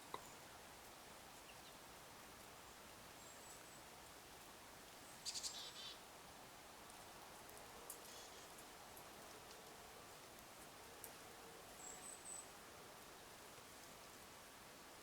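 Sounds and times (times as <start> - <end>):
steady outdoor hiss: 0.0 - 15.0
songbird calls: 5.2 - 6.0.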